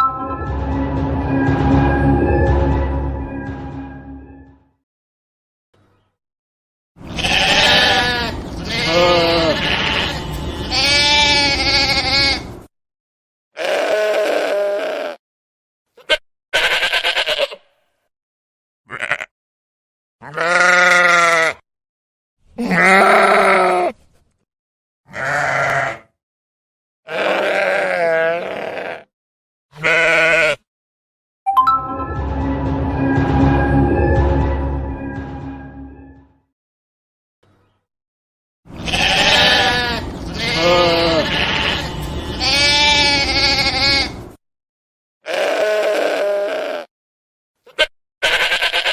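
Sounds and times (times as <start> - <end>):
sheep bleating: 7.1 - 12.5, 13.6 - 15.2, 16.0 - 17.6, 18.9 - 19.3, 20.2 - 21.6, 22.6 - 23.9, 25.1 - 26.1, 27.1 - 29.1, 29.7 - 30.7, 38.8 - 44.2, 45.2 - 46.9, 47.7 - 48.9.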